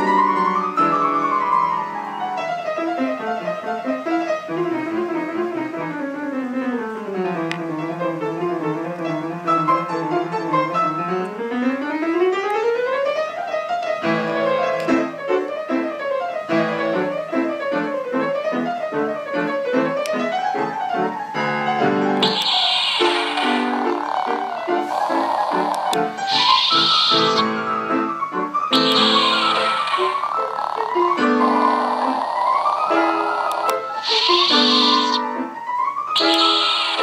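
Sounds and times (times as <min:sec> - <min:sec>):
electronic keyboard music: 0:22.0 - 0:37.0
burst of hiss: 0:22.2 - 0:27.7, 0:28.7 - 0:30.6, 0:31.3 - 0:35.2, 0:36.2 - 0:37.0.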